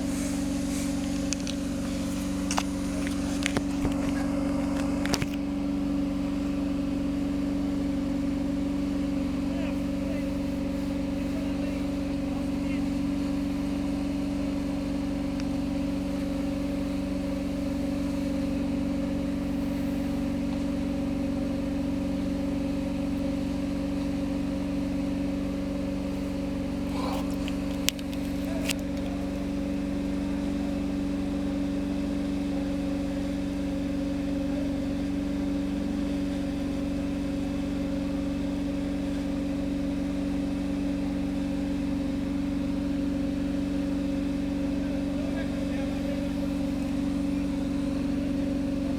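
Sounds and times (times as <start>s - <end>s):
engine-like hum: 0.0s - 48.9s.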